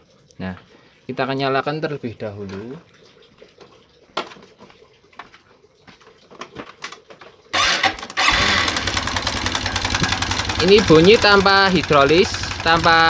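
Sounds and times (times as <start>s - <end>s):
motorcycle engine clattering: 7.6s - 13.0s.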